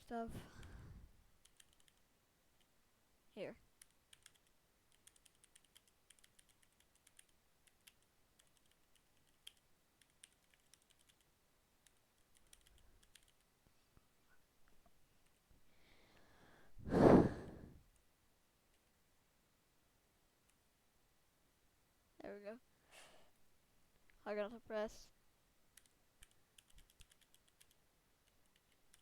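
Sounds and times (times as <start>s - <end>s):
loud breath close to microphone: 15.7s - 17.8s.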